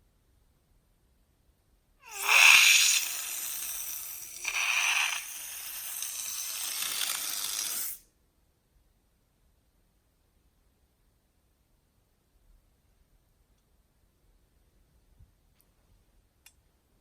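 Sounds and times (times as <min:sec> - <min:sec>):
air hissing out of balloon: 0:02.0 - 0:08.0.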